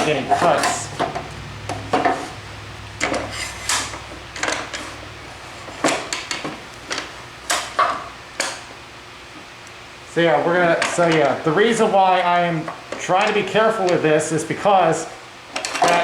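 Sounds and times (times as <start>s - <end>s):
wood scraping on saw table: 0.0s - 2.4s, 3.0s - 6.4s
low steady hum: 0.0s - 16.0s.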